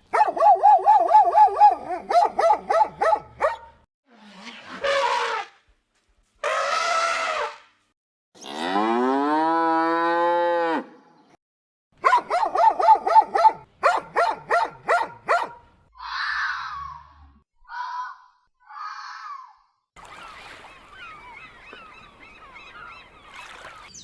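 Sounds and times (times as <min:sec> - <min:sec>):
cow mooing: 0:08.4 - 0:11.0.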